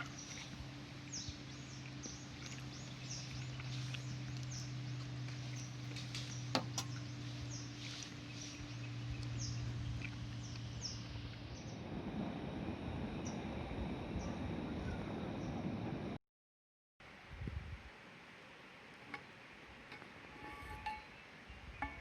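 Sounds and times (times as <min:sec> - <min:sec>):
birds chirping: 0:00.0 - 0:15.6
steady low hum: 0:00.0 - 0:16.2.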